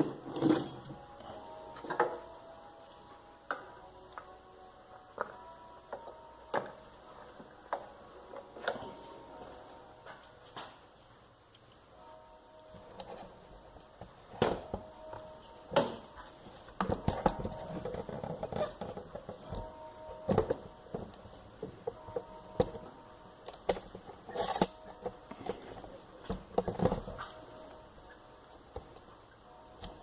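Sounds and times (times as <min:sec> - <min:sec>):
hand tools and metal parts clicking: 0:00.0 - 0:02.2, 0:23.4 - 0:27.7.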